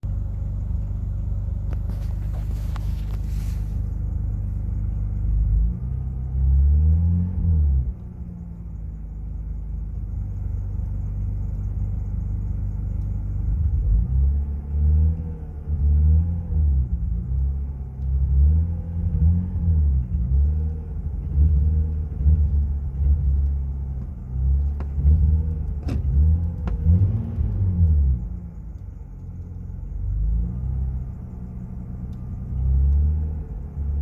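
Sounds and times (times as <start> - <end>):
car engine idling with a knock: 0.1 - 5.1, 22.5 - 27.0.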